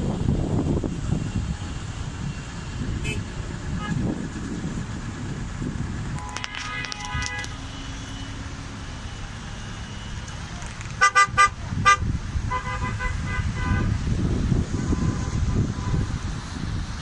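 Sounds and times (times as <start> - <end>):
engine and road noise: 0.0 - 17.0
car horn toots: 3.0 - 4.0, 6.2 - 8.5, 9.4 - 14.0, 14.7 - 16.2
faint horn beeps: 6.2 - 10.4.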